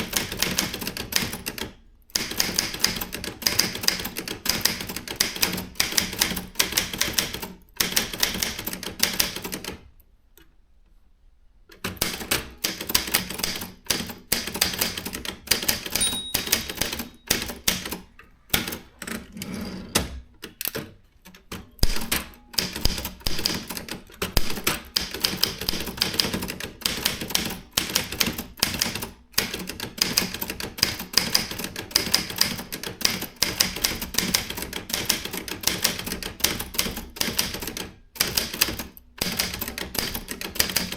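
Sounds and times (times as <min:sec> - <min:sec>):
typewriter typing: 0:00.0 - 0:09.8, 0:11.8 - 0:40.9.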